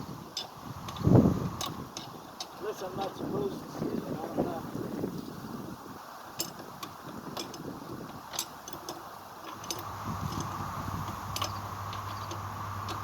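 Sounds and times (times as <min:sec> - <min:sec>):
metallic clicks of hand tools: 0:08.3 - 0:13.0
steady low hum: 0:09.3 - 0:13.0.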